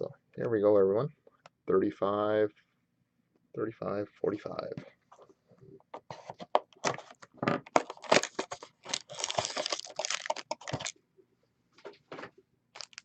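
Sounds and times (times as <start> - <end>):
packaging being torn and crinkled: 7.7 - 10.9, 12.8 - 13.0.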